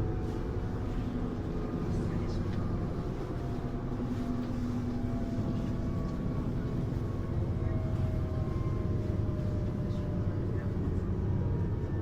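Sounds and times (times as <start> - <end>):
faint train whine: 0.0 - 12.0.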